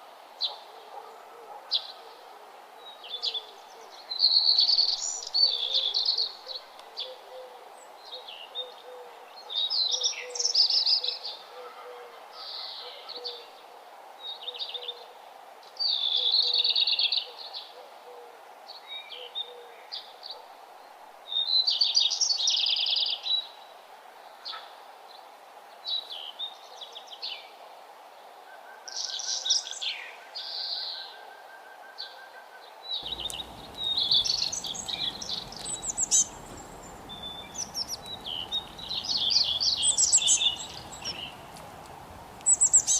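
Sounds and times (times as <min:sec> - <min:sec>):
faint background hiss: 0:00.0 - 0:31.1, 0:32.8 - 0:42.9
songbirds chirping: 0:02.8 - 0:11.4, 0:33.0 - 0:42.9.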